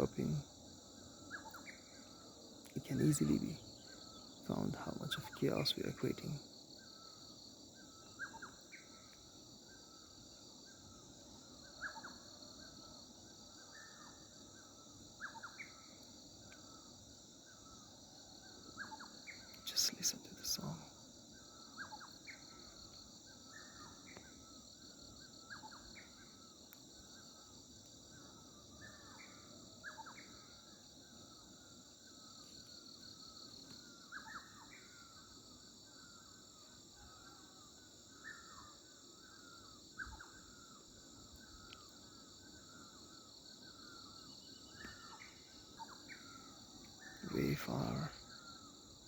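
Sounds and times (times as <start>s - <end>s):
songbirds chirping and singing: 0.0s - 10.1s, 41.4s - 48.9s
insects trilling: 0.0s - 49.0s.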